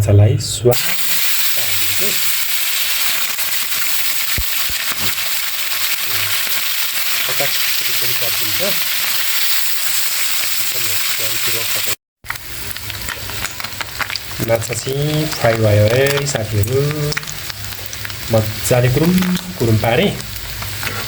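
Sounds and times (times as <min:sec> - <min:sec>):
fish sizzling in hot oil: 0:00.8 - 0:21.0
oil crackles: 0:00.8 - 0:21.0.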